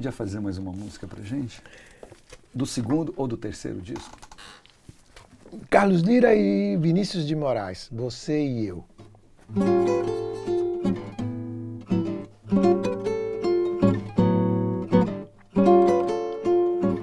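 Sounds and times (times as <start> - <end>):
acoustic guitar chords: 9.5 - 17.0.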